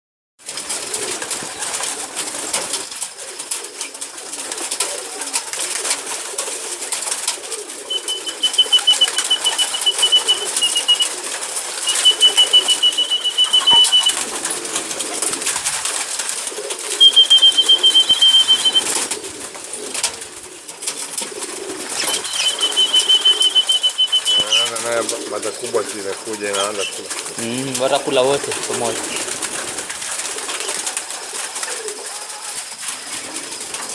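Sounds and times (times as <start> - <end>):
pigeon cooing: 0.5 - 33.9
flock hubbub: 7.8 - 19.6, 21.8 - 33.7
high rapidly pulsing trill: 11.9 - 14.2, 17.0 - 19.0.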